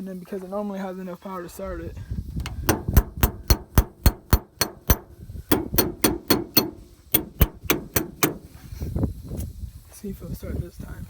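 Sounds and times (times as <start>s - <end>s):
wrench beating on metal: 2.4s - 8.5s.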